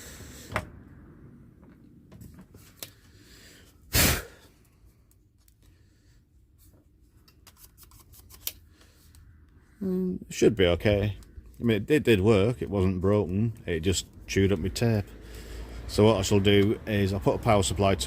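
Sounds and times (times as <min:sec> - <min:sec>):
loud burst of hissing: 0:03.9 - 0:04.4.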